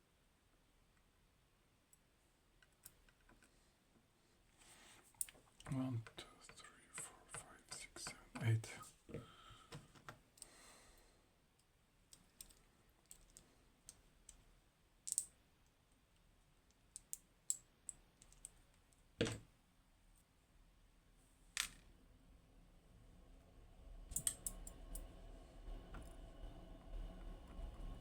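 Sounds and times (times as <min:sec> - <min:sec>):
small metal lock parts clicking: 0:12.1 - 0:14.4, 0:15.1 - 0:15.3, 0:18.2 - 0:18.6, 0:24.1 - 0:25.0.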